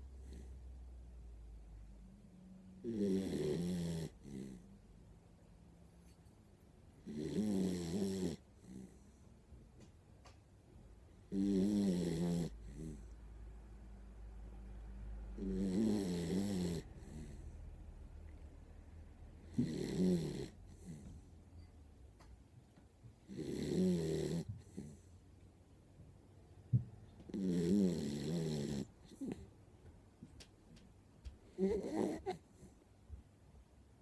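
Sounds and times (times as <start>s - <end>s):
dog snoring: 0.1s - 0.7s, 2.8s - 4.7s, 7.0s - 9.3s, 11.2s - 13.2s, 15.3s - 17.7s, 19.4s - 21.3s, 23.2s - 25.1s, 27.2s - 29.5s, 31.4s - 32.8s.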